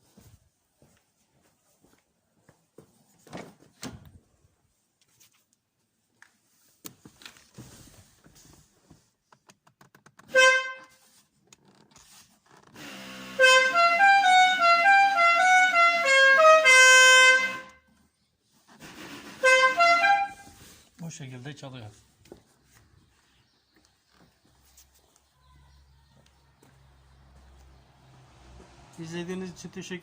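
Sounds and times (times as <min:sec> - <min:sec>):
air horn playing tune: 0:10.3 - 0:11.0, 0:12.8 - 0:17.8, 0:19.0 - 0:20.6
musical air horn blast: 0:10.3 - 0:11.0, 0:12.8 - 0:17.8, 0:19.0 - 0:20.6.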